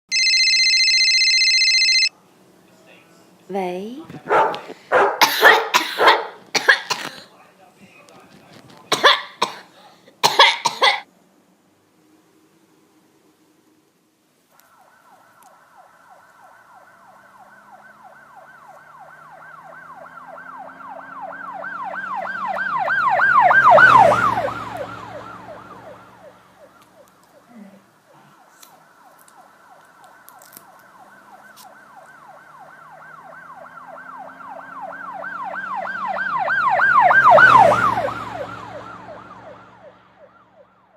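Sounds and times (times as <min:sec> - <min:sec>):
siren warbling yelp: 0:00.1 - 0:02.1, 0:14.7 - 0:27.5, 0:28.4 - 0:40.7.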